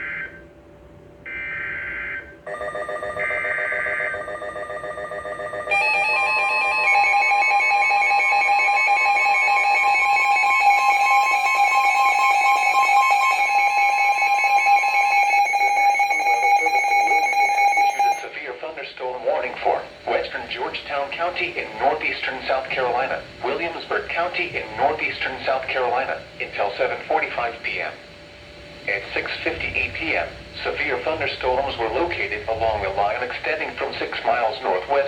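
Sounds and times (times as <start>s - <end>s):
buzzy data bursts: 19.5s - 35.0s.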